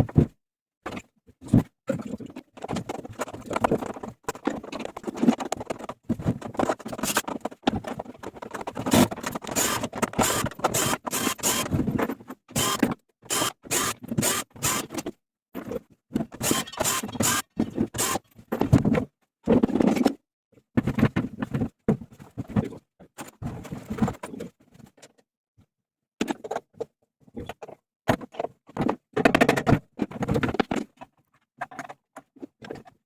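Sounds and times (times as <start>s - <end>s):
hand tools scraping and clicking: 8.8s - 11.8s, 12.6s - 15.0s, 16.4s - 18.2s.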